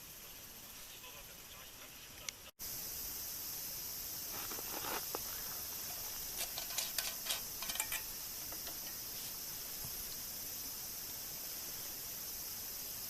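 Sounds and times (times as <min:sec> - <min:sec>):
high insect chorus: 0:00.0 - 0:13.0
light rustles and clicks: 0:05.9 - 0:09.0.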